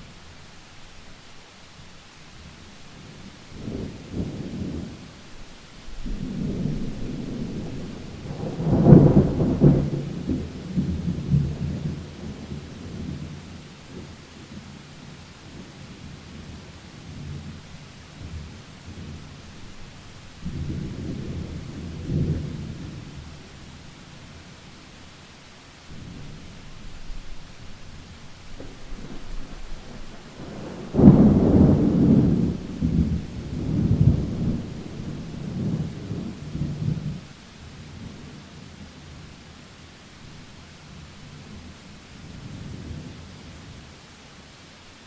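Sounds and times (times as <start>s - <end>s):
steady rain hiss: 0.0s - 45.0s
thunder rumbling: 5.9s - 14.1s, 16.3s - 23.4s, 25.9s - 37.2s.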